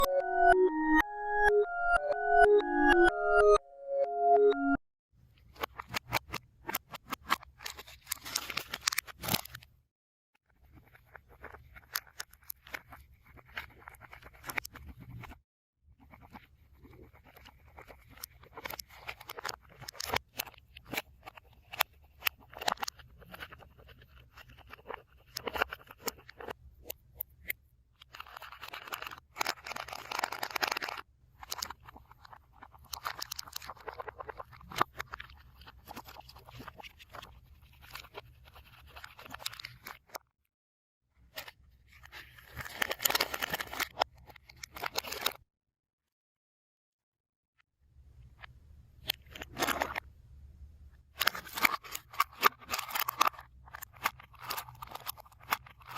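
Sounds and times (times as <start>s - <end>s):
slime squishing: 31.5s - 39.8s.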